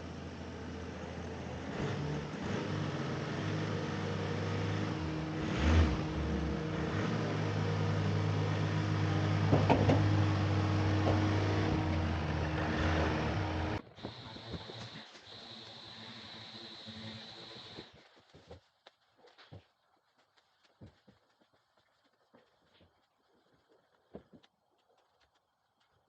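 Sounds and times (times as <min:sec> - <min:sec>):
motor humming: 0:00.0 - 0:17.9.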